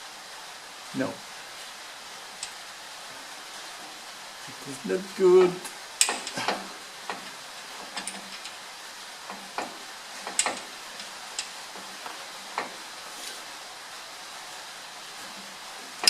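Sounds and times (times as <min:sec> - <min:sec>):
low hiss: 0:00.0 - 0:16.0
light metallic clicks and taps: 0:05.4 - 0:08.6, 0:09.3 - 0:12.8.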